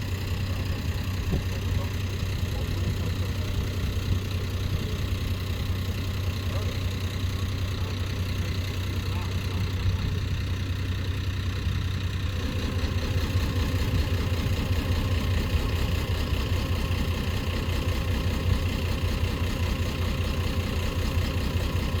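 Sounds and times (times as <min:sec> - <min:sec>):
boat engine running: 0:00.0 - 0:22.0.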